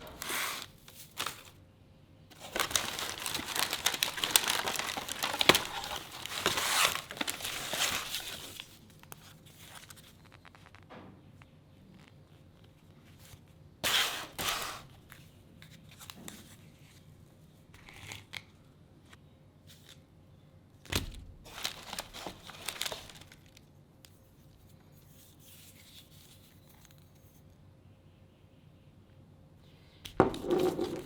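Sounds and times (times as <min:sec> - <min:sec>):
packaging tearing and crinkling: 0:00.0 - 0:01.6, 0:02.3 - 0:08.8, 0:21.5 - 0:23.6.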